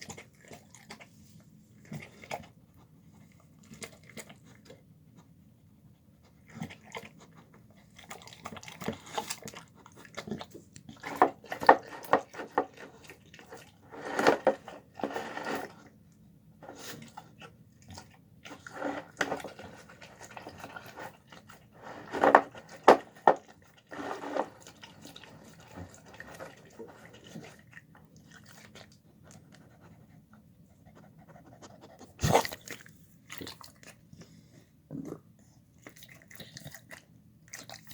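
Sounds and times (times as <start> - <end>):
dog chewing and crunching food: 0.0 - 37.9.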